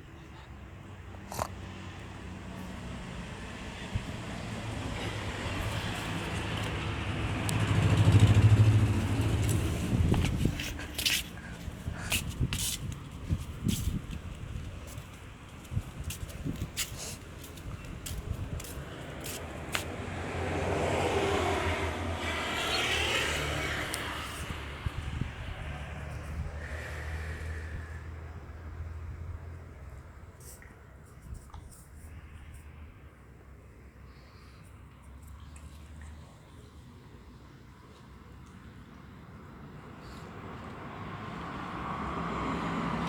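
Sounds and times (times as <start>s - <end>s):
vehicle engine approaching: 1.7s - 15.4s, 17.0s - 30.6s.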